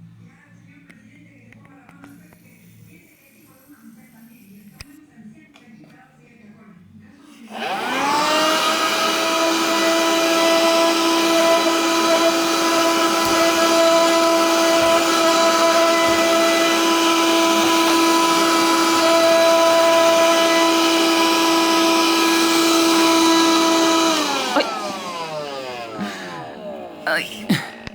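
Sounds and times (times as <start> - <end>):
vacuum cleaner motor whining: 7.3 - 27.9.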